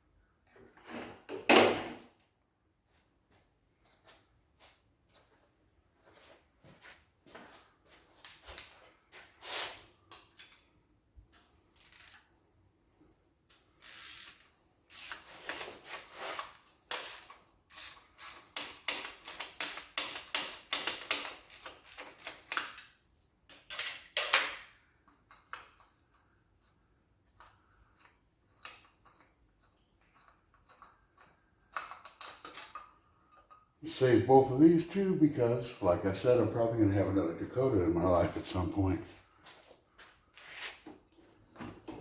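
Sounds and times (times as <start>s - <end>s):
ratchet wrench clicking: 11.7s - 12.3s, 13.8s - 22.6s.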